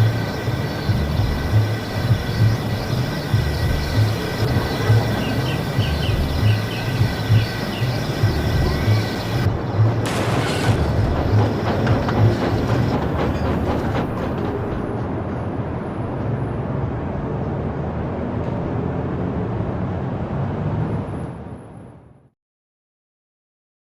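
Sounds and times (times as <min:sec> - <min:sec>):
steam train rumbling: 0:00.0 - 0:17.2.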